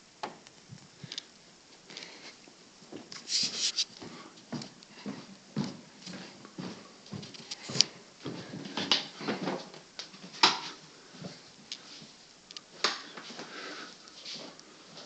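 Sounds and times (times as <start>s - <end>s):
rustling: 0.5s - 4.9s.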